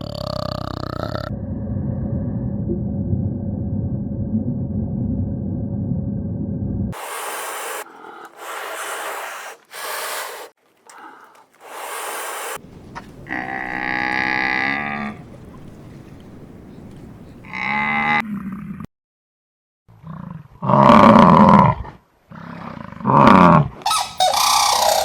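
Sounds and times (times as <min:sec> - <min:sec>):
short hissing bursts: 0:07.0 - 0:10.6, 0:11.6 - 0:12.6
cow mooing: 0:13.2 - 0:15.2.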